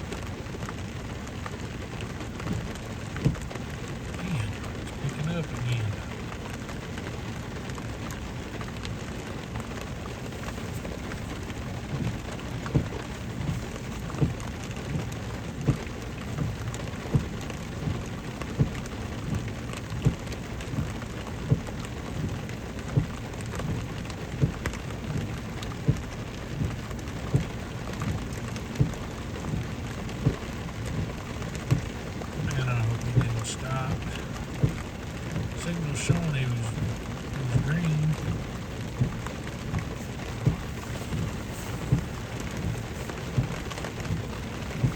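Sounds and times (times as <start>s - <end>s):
rain on a car: 0.0s - 44.9s
low thumps: 36.5s - 44.9s.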